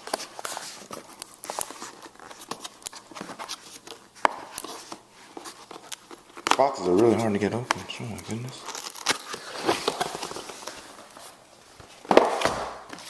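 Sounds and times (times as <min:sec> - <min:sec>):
cardboard scraping and rubbing: 0:00.0 - 0:11.4.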